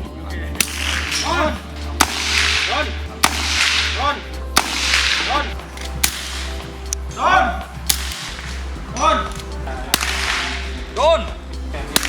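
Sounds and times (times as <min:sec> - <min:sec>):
rifle shots cracking: 0:00.6 - 0:06.8, 0:07.9 - 0:08.7, 0:09.3 - 0:10.7.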